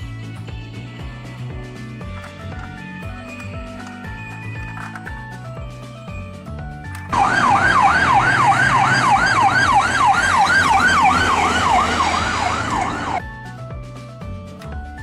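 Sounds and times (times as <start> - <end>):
emergency siren yelping: 7.1 - 13.2.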